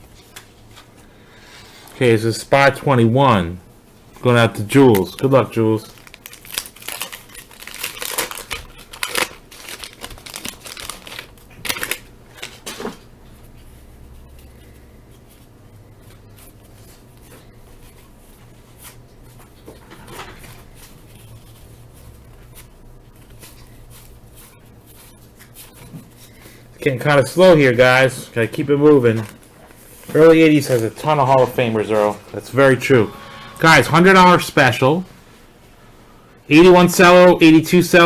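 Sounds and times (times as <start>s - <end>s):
low steady hum: 0.0s - 37.7s
wax paper wrapper crinkling: 4.6s - 19.5s.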